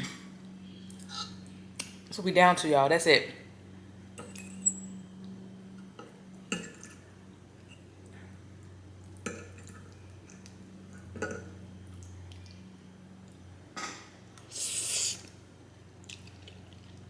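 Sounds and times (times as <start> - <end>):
wet slurp: 14.5 - 15.4.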